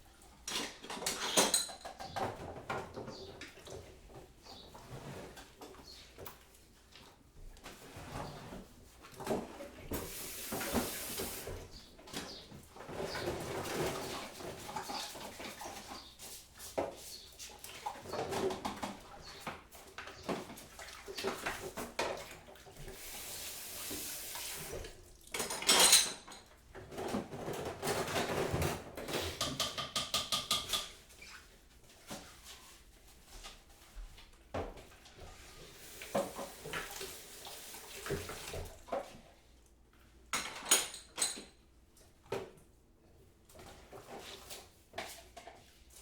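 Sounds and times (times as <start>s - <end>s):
crockery and cutlery clattering: 0.5s - 3.2s, 25.3s - 31.0s, 40.4s - 41.6s.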